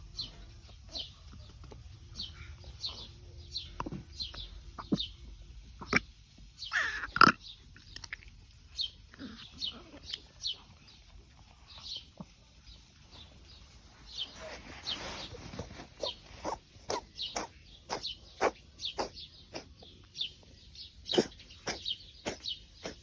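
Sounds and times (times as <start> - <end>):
cat retching and hacking: 5.8 - 6.1, 6.7 - 8.4.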